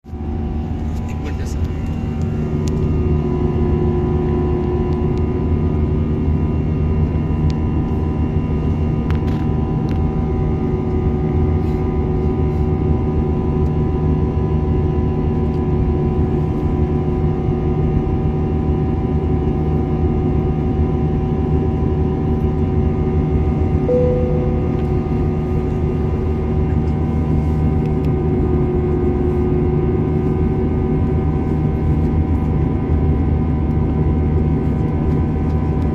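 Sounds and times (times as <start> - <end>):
steady humming tones: 23.9 - 26.4.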